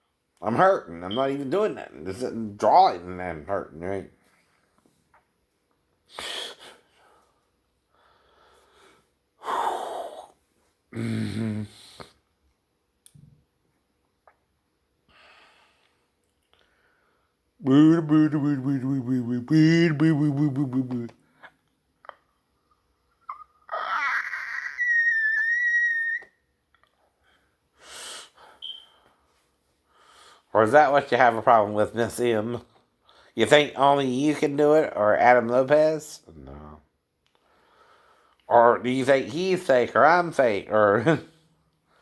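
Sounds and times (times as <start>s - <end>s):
very high whistle-register note: 28.6s - 29.0s.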